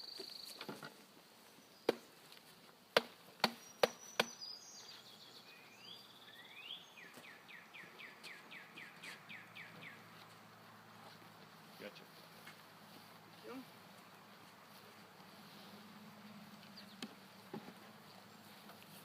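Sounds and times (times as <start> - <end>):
songbird singing: 0.0 - 19.0.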